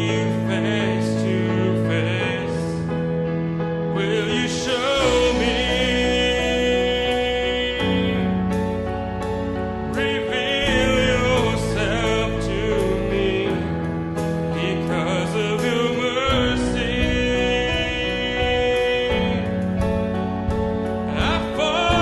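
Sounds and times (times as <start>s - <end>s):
band playing slow song: 0.0s - 22.0s
person singing: 0.0s - 22.0s
drum hits: 16.2s - 22.0s.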